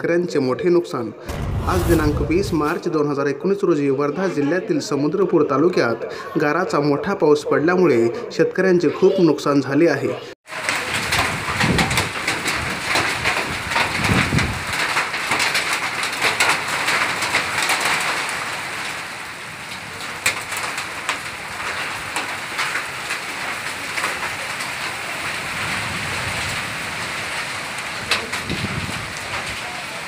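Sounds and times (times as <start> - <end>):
hailstones ticking on surfaces: 10.5 - 30.0.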